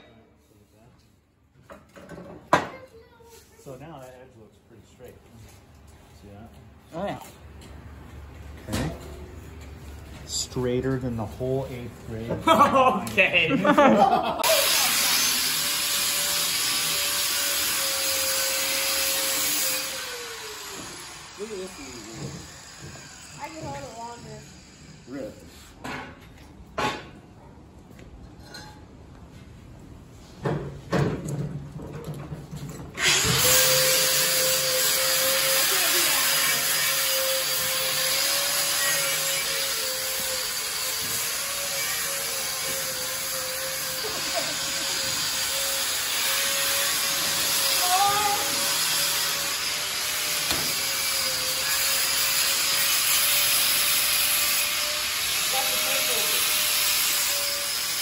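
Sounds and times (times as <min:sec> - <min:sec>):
power grinder running: 0:14.4 - 0:25.0, 0:33.0 - 0:58.0.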